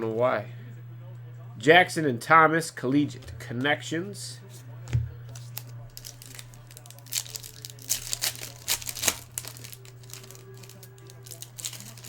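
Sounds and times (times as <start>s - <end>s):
steady low hum: 0.0s - 12.0s
cards shuffling: 4.5s - 12.0s
foil wrappers crinkling: 5.3s - 12.0s.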